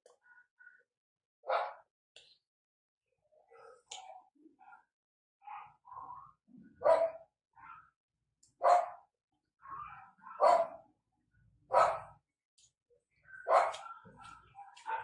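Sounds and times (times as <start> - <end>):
dog barking: 1.4 - 1.9, 4.6 - 6.2, 6.8 - 7.9, 8.6 - 9.1, 9.7 - 11.0, 11.7 - 12.2, 13.3 - 15.0.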